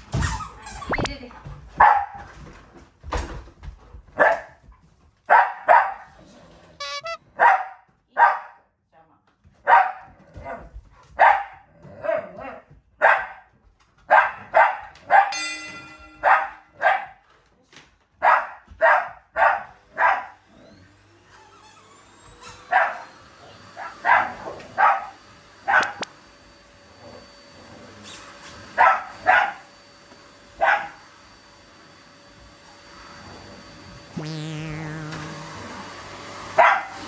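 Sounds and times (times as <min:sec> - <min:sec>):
dog barking: 0:01.8 - 0:02.1, 0:05.3 - 0:06.0, 0:07.4 - 0:08.6, 0:09.7 - 0:10.0, 0:11.2 - 0:12.3, 0:13.0 - 0:13.4, 0:14.1 - 0:15.4, 0:16.2 - 0:17.2, 0:18.2 - 0:20.3, 0:23.8 - 0:25.1, 0:25.7 - 0:26.1, 0:28.8 - 0:29.6, 0:30.6 - 0:30.9, 0:36.6 - 0:36.9
dog yelping: 0:06.8 - 0:07.6
vacuum cleaner motor whine: 0:20.4 - 0:37.0.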